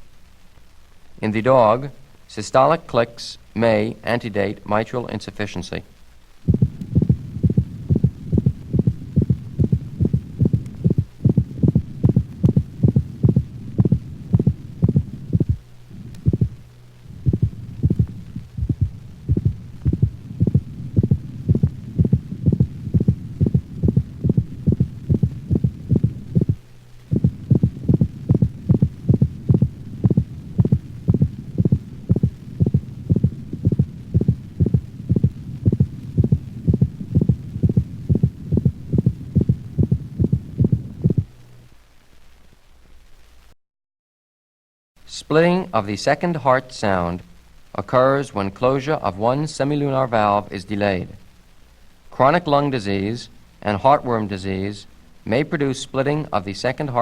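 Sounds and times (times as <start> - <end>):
dog heartbeat: 6.5 - 15.6, 16.3 - 16.6, 17.2 - 41.3
high-pitched heart click: 6.5 - 16.6, 17.2 - 41.3.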